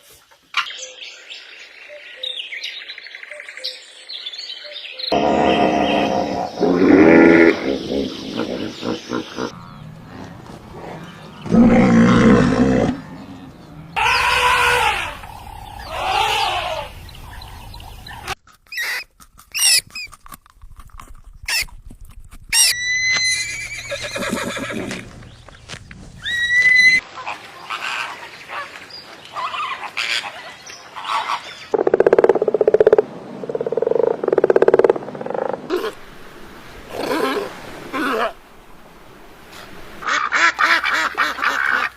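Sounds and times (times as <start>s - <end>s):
animal calls and cries: 4.7s - 19.0s.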